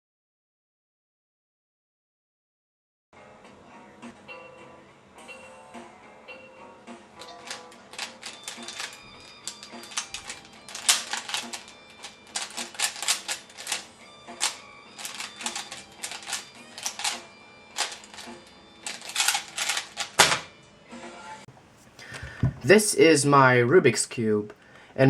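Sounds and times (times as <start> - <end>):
plastic puzzle cube clicking: 7.2 - 13.8, 14.4 - 20.2.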